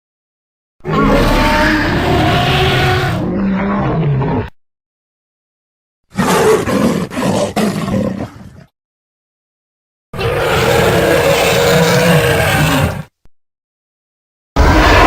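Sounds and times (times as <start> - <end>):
dinosaur roar: 0.8 - 4.6, 10.2 - 13.1, 14.6 - 15.0.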